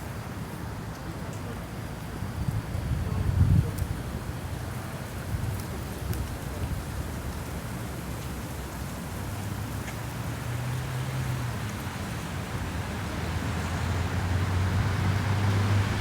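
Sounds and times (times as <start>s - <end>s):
passing motor vehicle hum: 7.4s - 16.0s.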